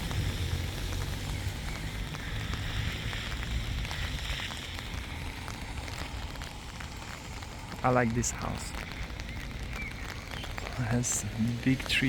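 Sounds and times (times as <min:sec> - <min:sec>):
hiss: 0:00.0 - 0:05.4.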